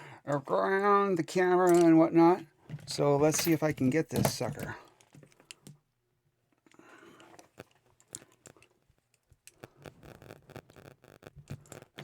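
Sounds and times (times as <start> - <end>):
lock-picking tools clicking and scraping: 1.6 - 2.0.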